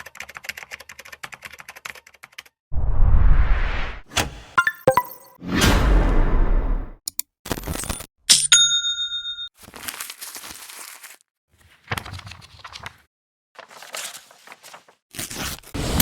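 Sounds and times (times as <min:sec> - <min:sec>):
chime ringing: 0:04.6 - 0:05.4.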